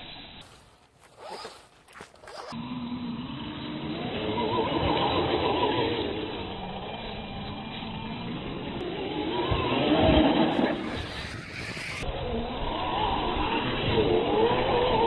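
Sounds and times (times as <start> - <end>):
electric motor and gears whining: 0.0 - 15.0
tyres rasping on ground: 0.4 - 2.6, 10.5 - 12.1.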